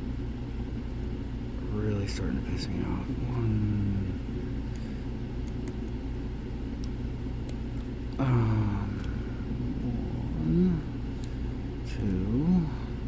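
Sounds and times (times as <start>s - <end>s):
low background rumble: 0.0s - 13.0s
person muttering: 8.2s - 11.0s, 11.9s - 13.0s.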